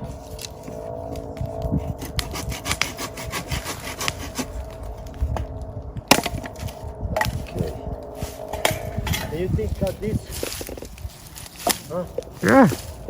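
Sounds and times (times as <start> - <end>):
saw cutting firewood: 2.0 - 4.5.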